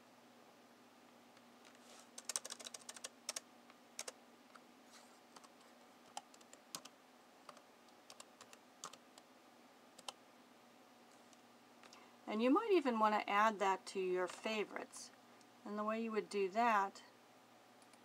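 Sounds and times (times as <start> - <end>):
computer keyboard typing: 2.2 - 3.4, 4.0 - 4.2, 5.4 - 6.9, 7.5 - 9.0, 10.0 - 10.2.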